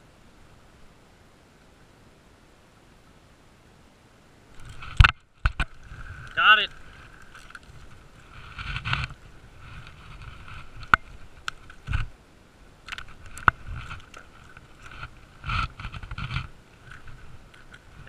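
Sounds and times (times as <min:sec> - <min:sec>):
knocks and scrapes in a boat: 0:04.6 - 0:12.1, 0:13.0 - 0:18.0.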